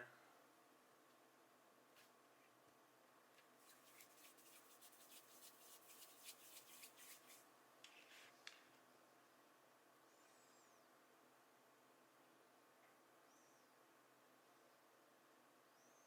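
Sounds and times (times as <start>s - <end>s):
hands rubbing play dough: 3.6s - 7.5s.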